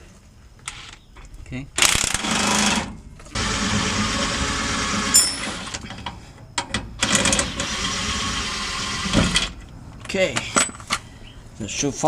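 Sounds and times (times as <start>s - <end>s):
power wrench running: 1.8s - 5.8s
sharp metallic clink: 5.1s - 5.6s.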